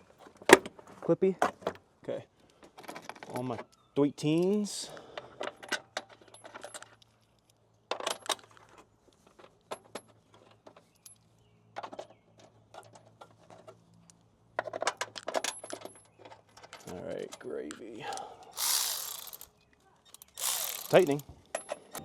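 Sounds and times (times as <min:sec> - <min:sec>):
metal tools clinking: 0:18.1 - 0:19.5, 0:20.1 - 0:22.0.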